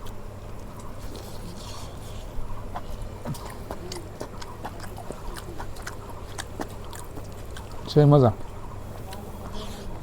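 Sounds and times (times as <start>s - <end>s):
person chewing food: 0.6s - 7.9s.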